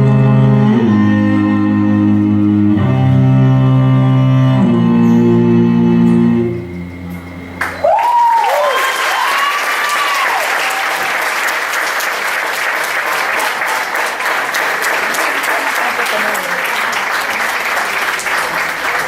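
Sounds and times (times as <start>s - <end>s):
shrill calls: 4.8s - 11.3s
audience applauding and cheering: 7.6s - 19.0s.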